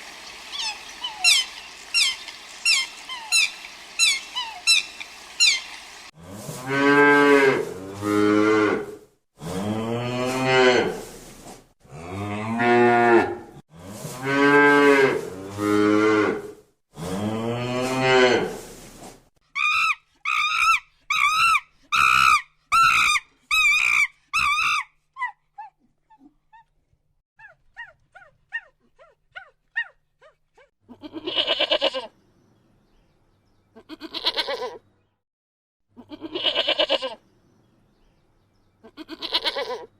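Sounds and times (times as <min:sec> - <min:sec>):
faint chirps: 0:00.0 - 0:06.1
short high wavering calls: 0:00.0 - 0:06.1.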